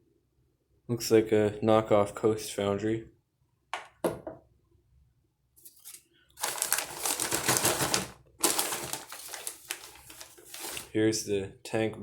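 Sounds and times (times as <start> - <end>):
plastic bag crinkling: 5.7 - 11.0.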